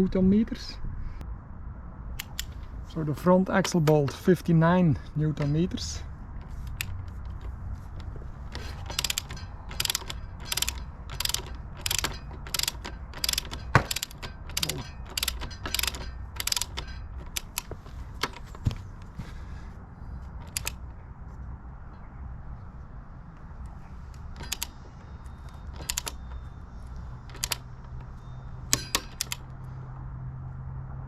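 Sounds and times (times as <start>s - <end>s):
ratchet wrench clicking: 2.2s - 2.7s, 5.4s - 18.7s, 20.4s - 20.8s, 24.2s - 29.5s.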